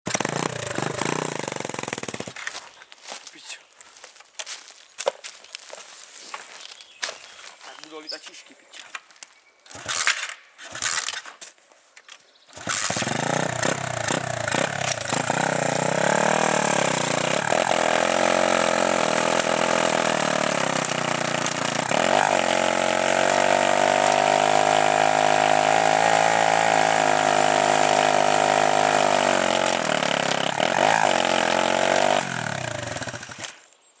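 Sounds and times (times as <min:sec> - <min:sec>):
motorbike engine revving: 0:00.1 - 0:02.4, 0:09.7 - 0:11.2, 0:12.5 - 0:33.5.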